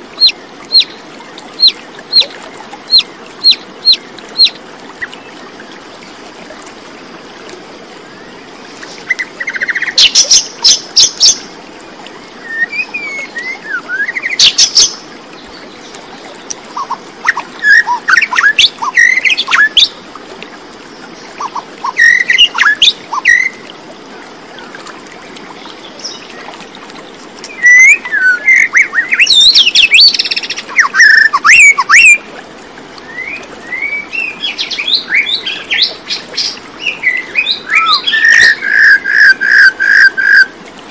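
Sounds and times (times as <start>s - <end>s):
birds chirping and whistling: 16.8s - 19.9s, 27.5s - 32.2s, 36.4s - 40.4s.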